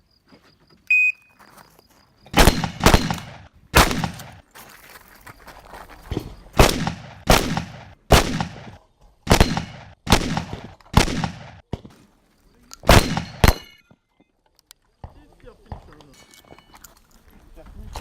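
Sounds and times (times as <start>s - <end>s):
shotgun shots: 2.3s - 4.4s, 6.6s - 11.8s, 12.8s - 13.8s.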